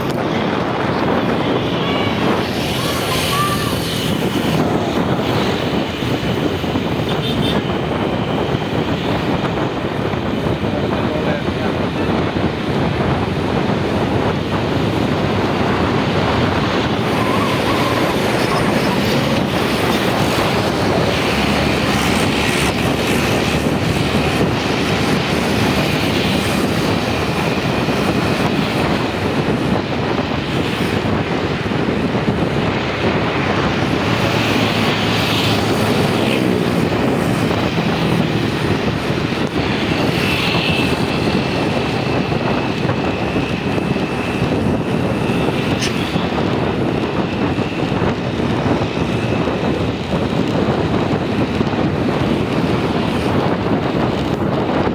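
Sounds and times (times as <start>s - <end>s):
road and engine rumble: 0.0s - 54.9s.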